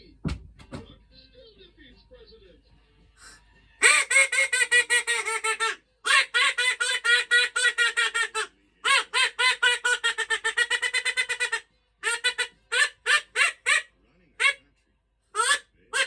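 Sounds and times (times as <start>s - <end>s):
duck quacking rapidly: 3.2s - 14.6s, 15.4s - 16.0s.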